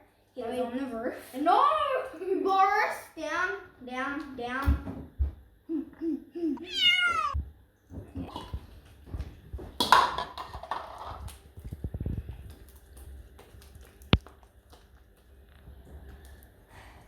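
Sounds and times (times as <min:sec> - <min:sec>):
cat meowing: 0:06.6 - 0:07.4.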